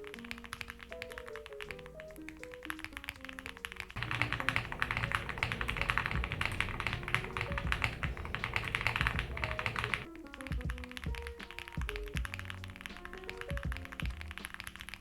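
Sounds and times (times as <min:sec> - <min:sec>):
mechanical keyboard typing: 0:03.7 - 0:10.1.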